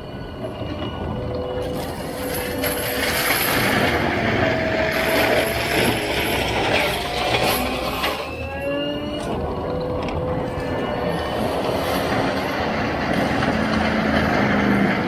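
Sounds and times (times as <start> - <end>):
track loader running: 0.0 - 15.0
machine rattling and clanking: 1.6 - 8.3.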